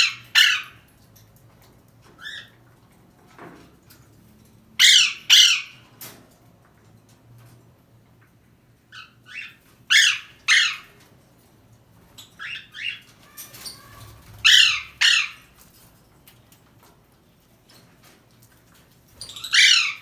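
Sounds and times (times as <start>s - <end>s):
parrot squawking: 0.0s - 0.8s, 4.8s - 5.8s, 9.0s - 10.9s, 12.4s - 15.5s, 19.2s - 20.0s.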